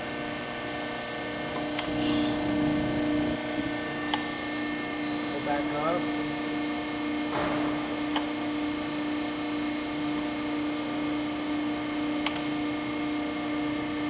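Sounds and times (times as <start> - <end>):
hydraulic power unit humming: 0.0 - 14.0
sharp clicks: 12.2 - 12.5.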